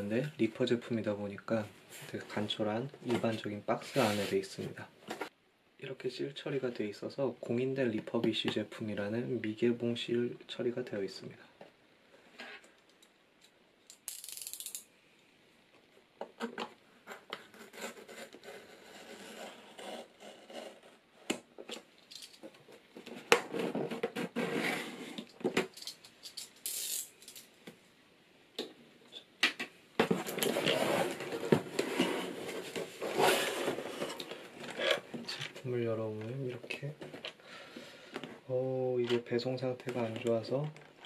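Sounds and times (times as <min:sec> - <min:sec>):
cardboard and packing rustling: 0:30.0 - 0:37.3.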